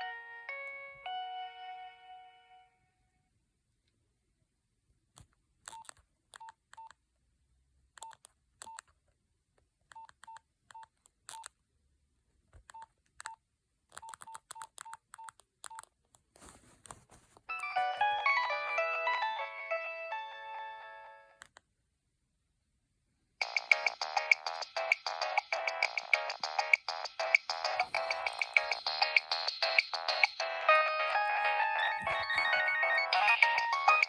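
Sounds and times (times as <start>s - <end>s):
phone ringtone melody: 0.0s - 2.8s, 17.5s - 21.4s, 23.4s - 34.0s
phone key beeps with clicks: 14.0s - 15.9s.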